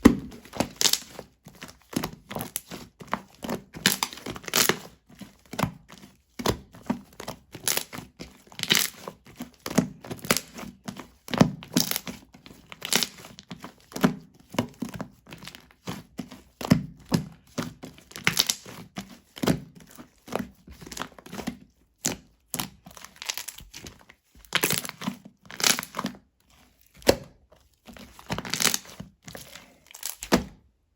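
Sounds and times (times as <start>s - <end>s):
slime squelching and popping: 0.0s - 1.2s, 18.1s - 19.7s, 22.0s - 26.1s, 26.8s - 30.4s.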